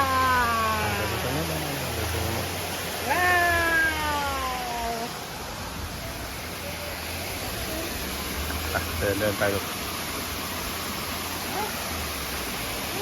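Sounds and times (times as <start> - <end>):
child calling out: 3.1 - 5.1.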